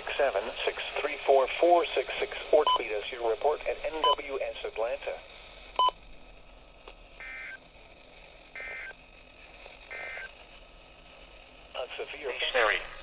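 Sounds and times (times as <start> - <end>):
faint radio hiss: 0.0 - 13.0.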